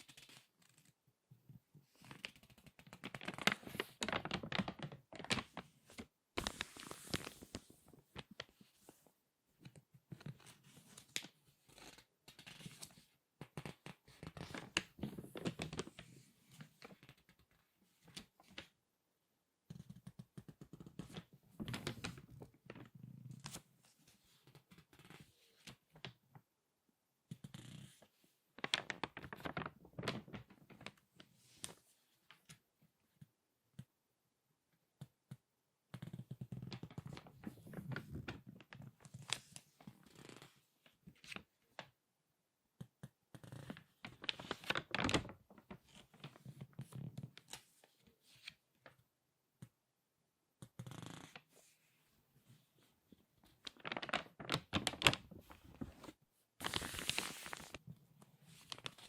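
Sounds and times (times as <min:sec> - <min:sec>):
magazine pages crinkling: 0:02.6 - 0:07.6, 0:28.6 - 0:31.0, 0:44.0 - 0:47.6, 0:53.5 - 0:57.8, 0:58.5 - 0:59.0.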